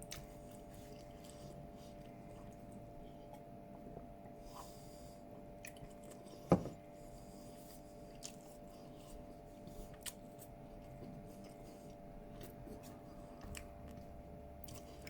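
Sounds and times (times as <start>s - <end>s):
person chewing: 0.0s - 3.4s, 5.6s - 6.5s, 7.8s - 15.0s
faint steady hum: 0.0s - 15.0s.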